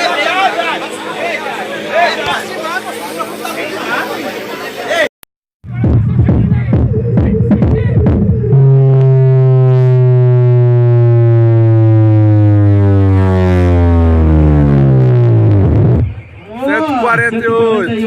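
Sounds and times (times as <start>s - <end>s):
thumping bass music: 5.6s - 16.4s
loud low bass tone: 5.6s - 16.6s.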